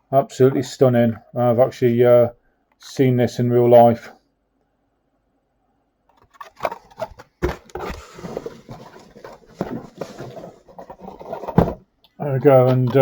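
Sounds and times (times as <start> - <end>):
plastic packaging crinkling: 6.2 - 11.8.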